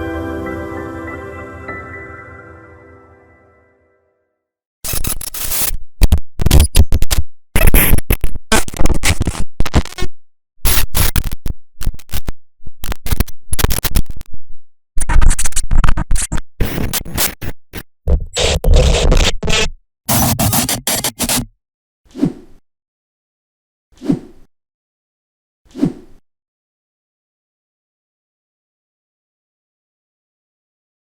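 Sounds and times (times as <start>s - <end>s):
stuttering distorted glitch bursts: 18.1s - 21.4s.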